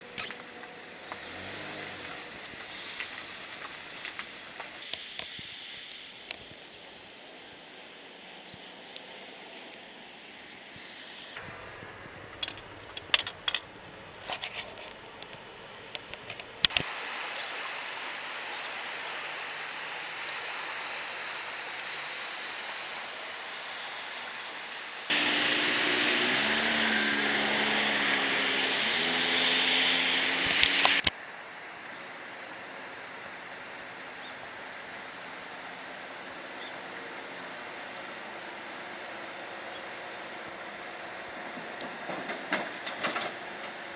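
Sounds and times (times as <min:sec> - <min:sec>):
steady rushing hiss: 0:00.0 - 0:43.9
rising and falling hum: 0:11.4 - 0:14.3, 0:25.1 - 0:31.1
scattered clicks and knocks: 0:11.4 - 0:16.8, 0:41.8 - 0:43.8.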